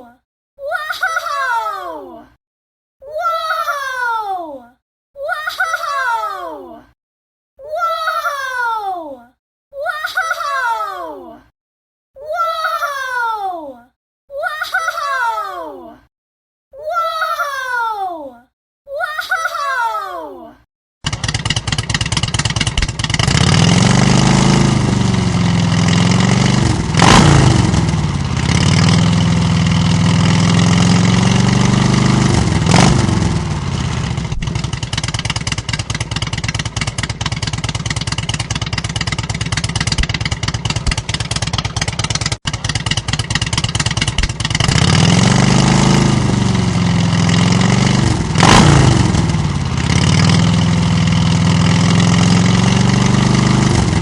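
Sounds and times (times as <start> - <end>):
engine revving and idling: 21.1 - 54.0.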